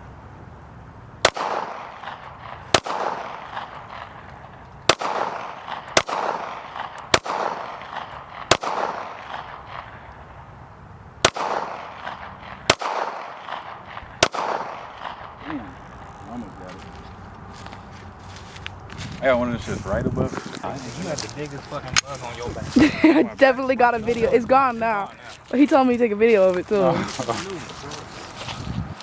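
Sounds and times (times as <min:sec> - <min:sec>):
gunshots with echo: 0:01.2 - 0:04.2, 0:04.9 - 0:10.1, 0:11.2 - 0:15.5.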